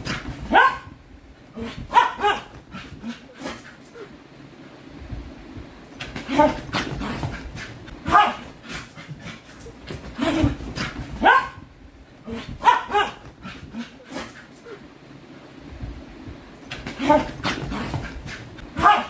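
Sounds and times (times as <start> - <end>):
dog barking: 0.4 - 1.0, 1.8 - 3.5, 8.0 - 8.5, 11.2 - 11.7, 12.4 - 14.2, 18.8 - 19.0.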